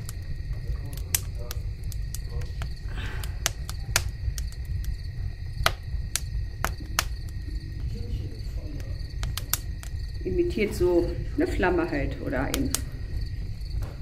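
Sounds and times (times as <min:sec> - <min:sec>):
insects trilling: 0:00.0 - 0:14.0
low rumble: 0:00.0 - 0:14.0
sharp clicks: 0:08.8 - 0:10.0.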